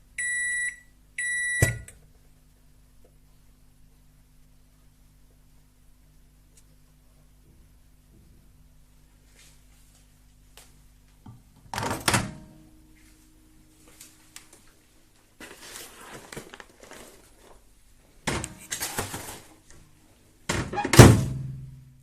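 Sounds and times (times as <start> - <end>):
popcorn bag rustling: 15.4 - 17.8, 18.6 - 19.7.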